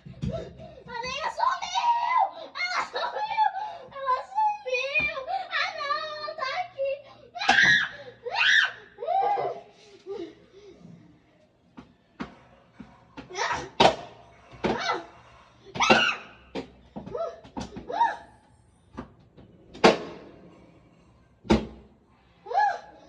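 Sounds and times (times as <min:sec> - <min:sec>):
girl squealing and laughing: 0:01.8 - 0:03.8, 0:07.5 - 0:10.3.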